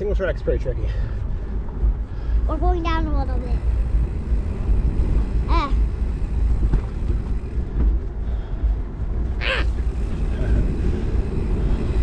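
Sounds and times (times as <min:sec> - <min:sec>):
tyres rolling on dirt trail: 0:00.0 - 0:12.0
wind buffeting microphone: 0:00.0 - 0:12.0
child crying out: 0:09.4 - 0:09.8.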